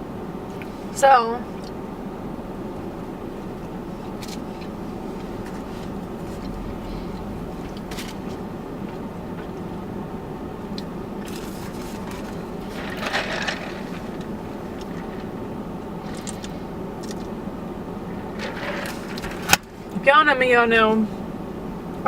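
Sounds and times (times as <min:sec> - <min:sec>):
car interior hum: 0:00.0 - 0:22.0
food clicks and scrapes: 0:11.2 - 0:15.4, 0:16.0 - 0:17.4, 0:18.2 - 0:19.6
crackling rustle: 0:11.2 - 0:17.4, 0:18.1 - 0:19.9.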